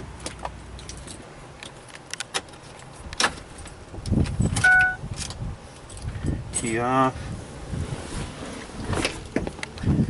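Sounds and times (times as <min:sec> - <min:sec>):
short electronic beep: 0:04.6 - 0:05.0.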